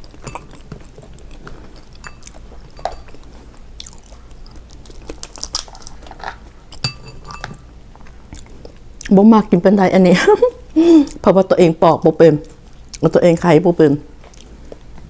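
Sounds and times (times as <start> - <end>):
chewing and crunching: 0.0 - 9.2, 14.2 - 15.0.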